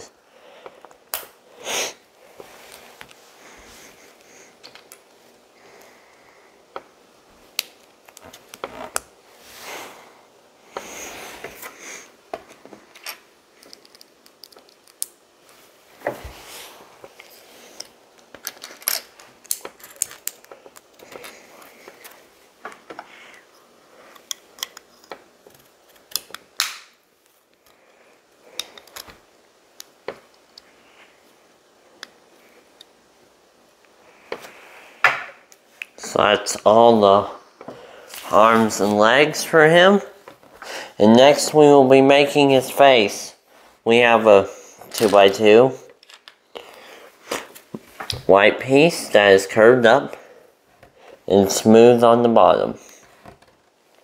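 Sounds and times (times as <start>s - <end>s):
pieces rustling: 10.7s - 26.6s, 44.6s - 48.3s.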